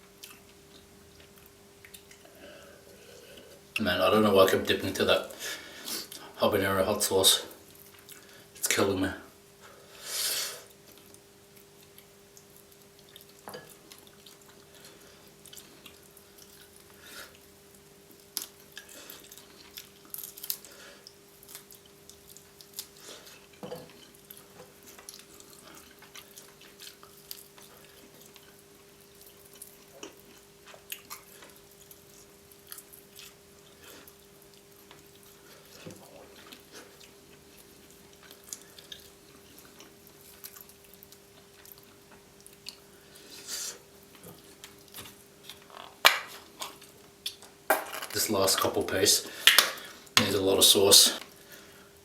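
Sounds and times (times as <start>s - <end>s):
quiet chewing: 0.0s - 3.7s, 7.6s - 8.4s, 10.6s - 47.6s
faint electrical hum: 0.0s - 52.0s.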